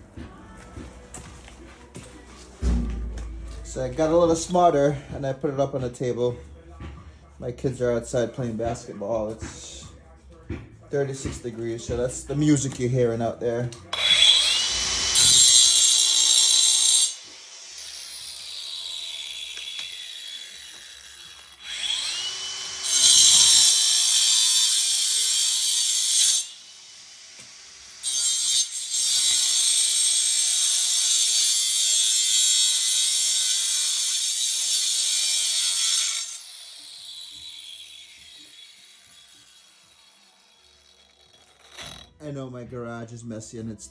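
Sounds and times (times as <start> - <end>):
grinder grinding metal: 10.5 - 42.2.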